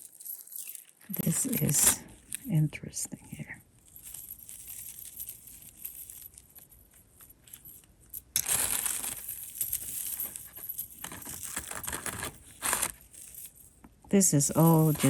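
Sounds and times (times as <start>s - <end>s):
jewelry chains clicking: 0.0s - 2.7s, 3.4s - 15.0s
crinkling rustling handling noise: 8.4s - 13.9s.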